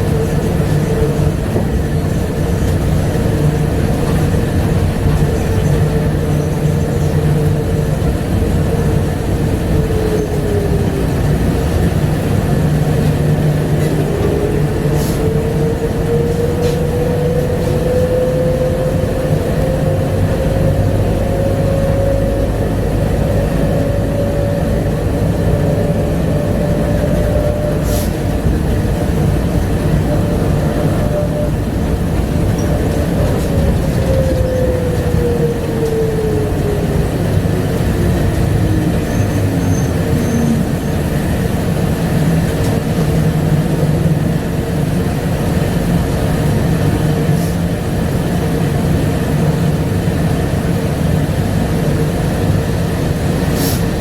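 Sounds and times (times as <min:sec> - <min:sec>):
train rumble: 0:00.0 - 0:54.0.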